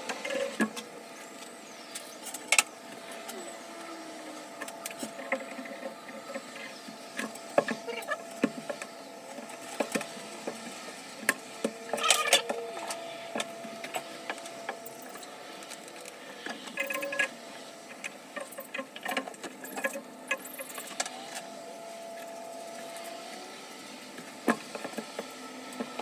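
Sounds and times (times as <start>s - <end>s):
faint steady hum: 0.0s - 26.0s
hand tools clicking and tapping: 4.6s - 17.3s.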